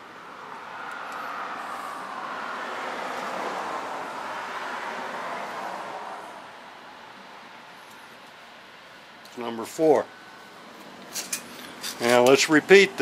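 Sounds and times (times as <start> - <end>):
vehicle passing: 0.0 - 7.7.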